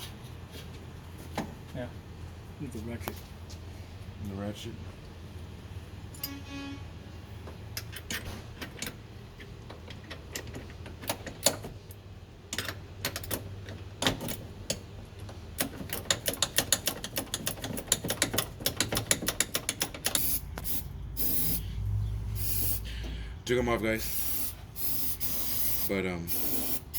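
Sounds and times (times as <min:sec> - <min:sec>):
hand ratchet clicking: 0:15.6 - 0:20.8.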